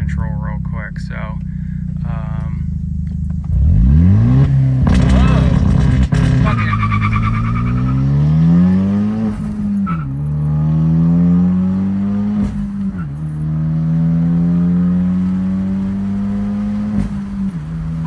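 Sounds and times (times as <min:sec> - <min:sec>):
car engine accelerating hard: 0:00.0 - 0:18.0.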